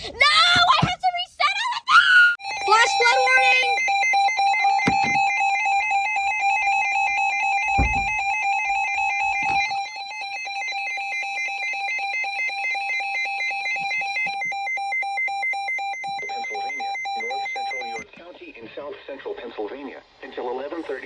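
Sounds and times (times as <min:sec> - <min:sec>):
steady high alert tone: 0:02.4 - 0:18.0
warbling alarm beeps: 0:02.4 - 0:18.2
dull thuds: 0:07.7 - 0:09.8.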